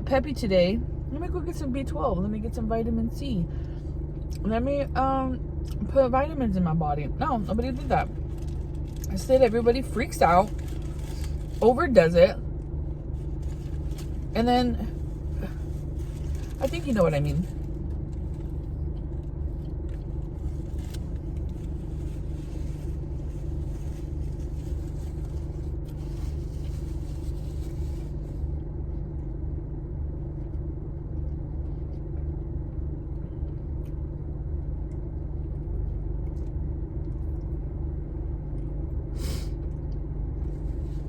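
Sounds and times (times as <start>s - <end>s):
car engine idling: 0.0s - 28.7s.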